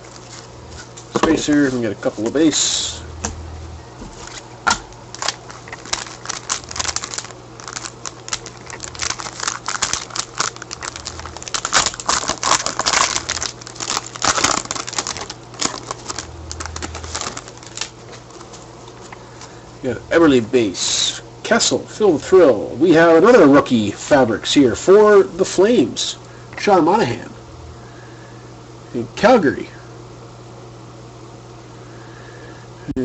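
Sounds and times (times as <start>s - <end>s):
faint low hum: 0.0s - 33.0s
cards being shuffled: 5.1s - 19.5s.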